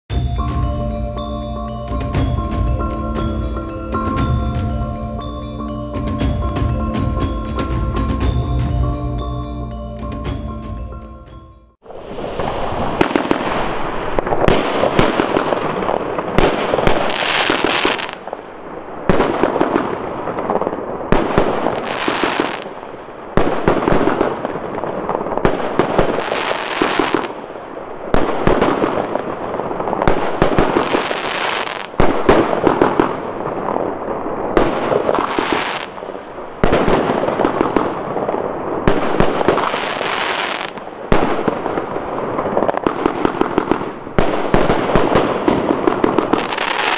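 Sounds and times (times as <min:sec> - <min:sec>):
firework shots and crackling: 0:11.8 - 0:46.9.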